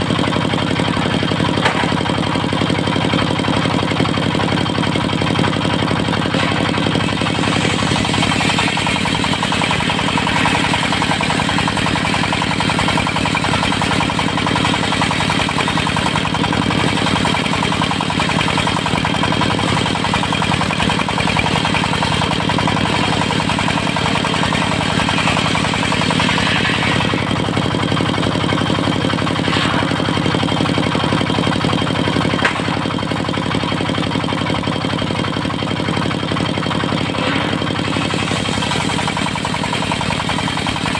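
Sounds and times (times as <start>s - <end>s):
diesel engine running: 0.0s - 40.9s
sharp knock: 1.6s - 2.1s, 32.4s - 32.8s.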